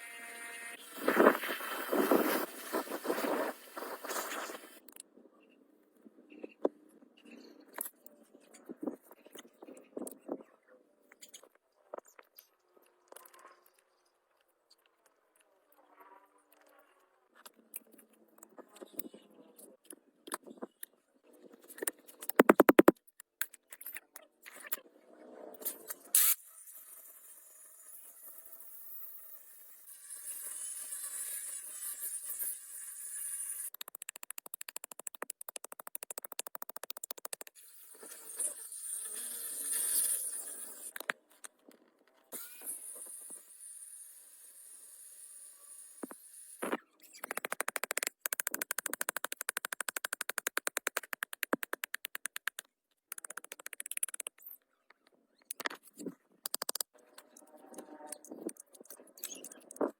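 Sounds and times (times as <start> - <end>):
sharp click: 46.6 - 54.5, 56.4 - 56.9.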